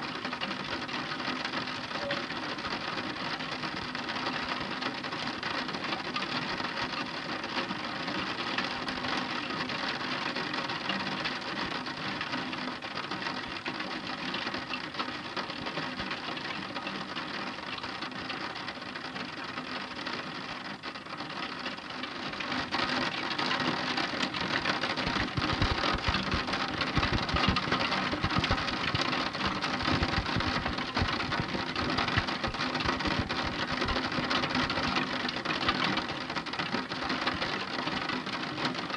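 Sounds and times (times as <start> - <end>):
heavy rain falling: 21.6 - 36.0
low thuds: 25.0 - 34.1.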